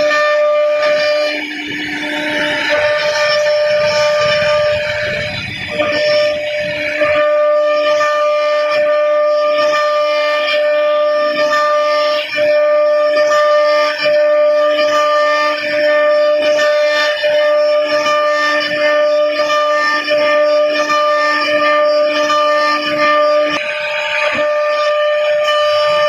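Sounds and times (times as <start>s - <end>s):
router spindle whining: 0.0s - 26.0s.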